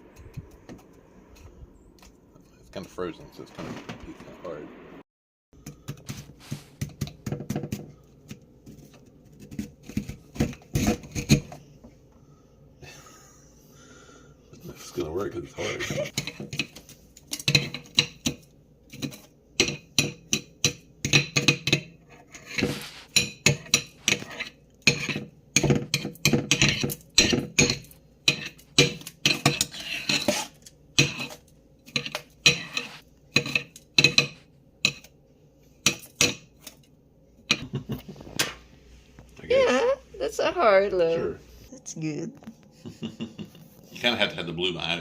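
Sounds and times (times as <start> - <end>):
tool scraping frozen surface: 22.2 - 23.2, 32.6 - 33.0.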